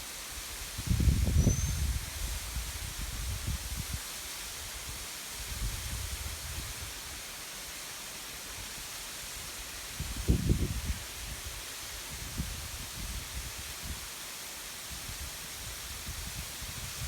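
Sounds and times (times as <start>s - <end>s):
wind buffeting microphone: 0.8s - 3.9s.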